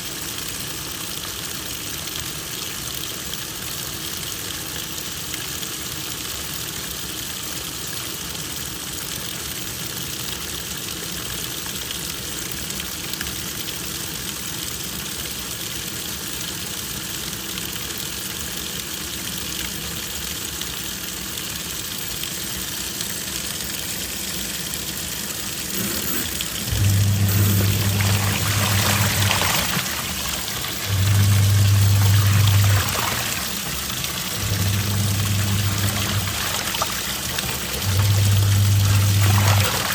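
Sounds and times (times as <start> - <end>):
water running into tub: 22.9 - 39.9
washing machine motor humming: 23.5 - 39.9.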